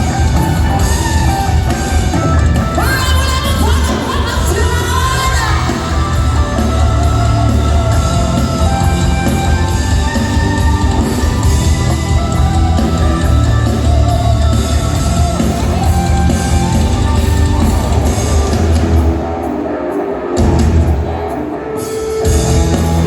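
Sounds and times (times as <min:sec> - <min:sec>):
rock band playing live: 0:00.0 - 0:23.0
person singing: 0:02.5 - 0:18.8.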